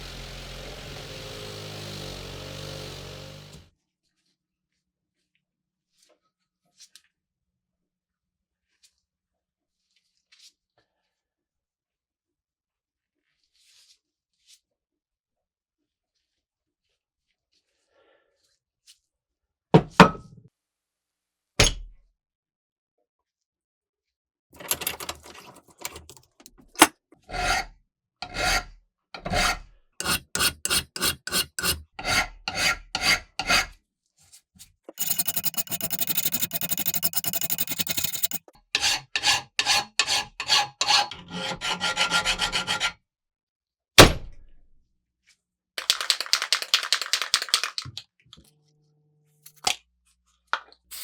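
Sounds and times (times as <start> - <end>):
hand scraping rusty metal: 24.6 - 27.6, 29.2 - 33.7, 35.0 - 42.9.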